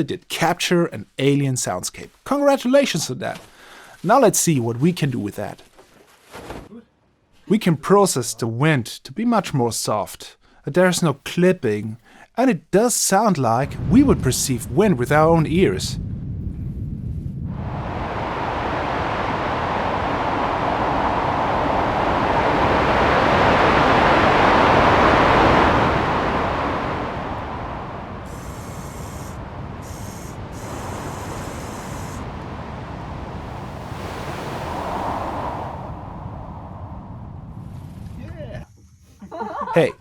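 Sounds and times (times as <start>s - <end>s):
soft gusting wind: 13.6s - 39.7s
faint high whine: 17.7s - 32.6s.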